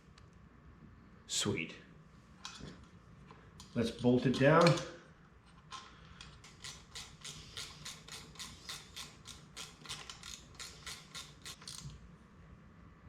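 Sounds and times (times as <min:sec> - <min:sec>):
ratchet wrench clicking: 0:06.2 - 0:11.9.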